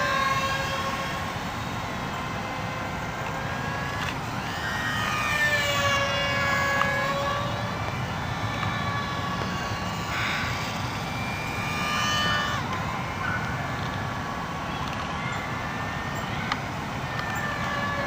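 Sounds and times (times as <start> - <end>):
model airplane motors whining: 0.0 - 18.0.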